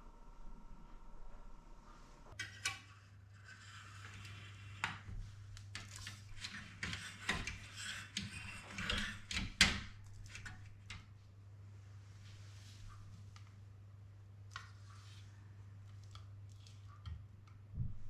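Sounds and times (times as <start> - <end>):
low steady hum: 0.0 - 3.4
utensils and containers clattering: 5.8 - 10.6.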